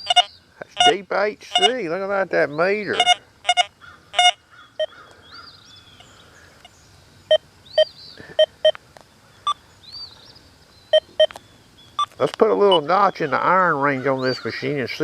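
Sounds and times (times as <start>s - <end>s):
metal detector beeps: 0.0s - 1.8s, 2.9s - 4.9s, 10.9s - 11.4s.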